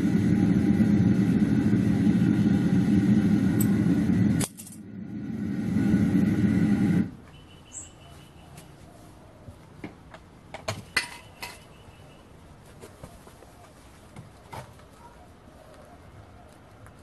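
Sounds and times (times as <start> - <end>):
furnace burner rushing: 0.0 - 7.2.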